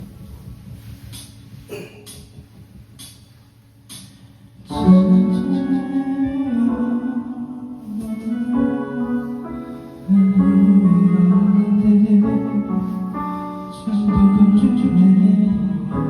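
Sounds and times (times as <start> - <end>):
piano ballad backing track: 0.0 - 16.0.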